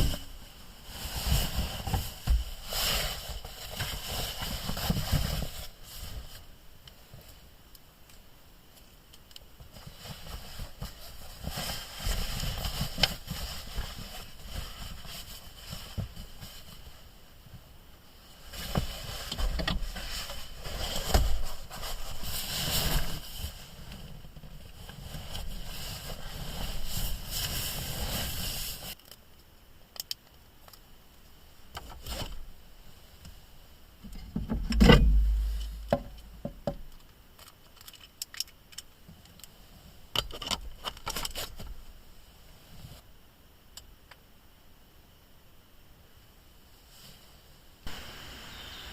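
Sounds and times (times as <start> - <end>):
handling rustling and scraping: 0.0 - 7.5, 8.1 - 29.2, 31.7 - 33.4, 34.0 - 43.1
heavy thump: 34.4 - 36.8.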